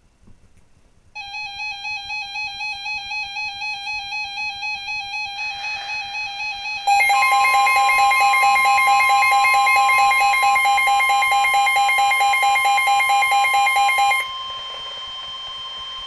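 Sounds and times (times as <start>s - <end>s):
pulsing electronic alert alarm: 1.2s - 16.0s.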